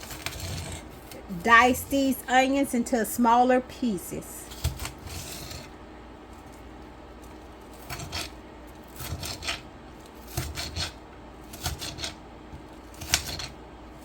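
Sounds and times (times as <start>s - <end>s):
knife chopping on cutting board: 8.9s - 9.6s, 10.2s - 12.2s, 12.9s - 13.5s.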